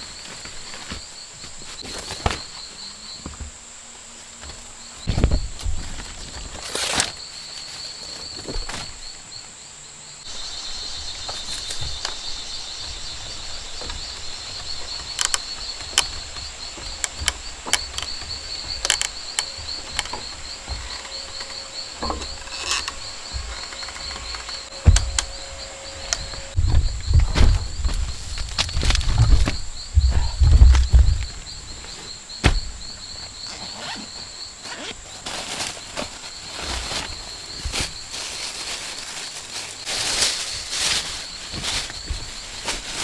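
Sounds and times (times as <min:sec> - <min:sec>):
insects trilling: 0:00.0 - 0:43.0
heavy thumps: 0:04.4 - 0:06.6, 0:10.2 - 0:34.6
sharp clicks and knocks: 0:11.0 - 0:33.2.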